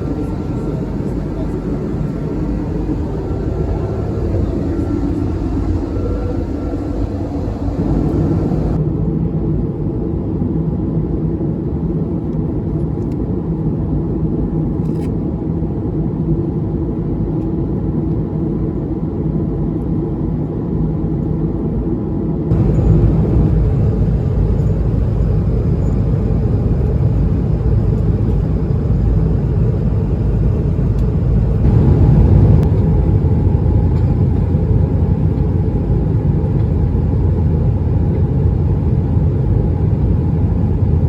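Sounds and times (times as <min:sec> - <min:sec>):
jet cabin engine rumble: 0:00.0 - 0:10.3, 0:22.5 - 0:41.0.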